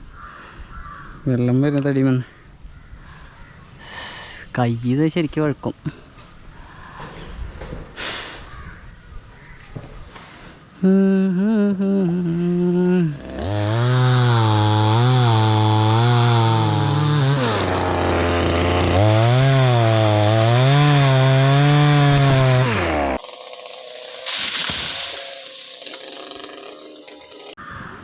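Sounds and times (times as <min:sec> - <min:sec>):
chainsaw cutting wood: 0:13.2 - 0:27.6.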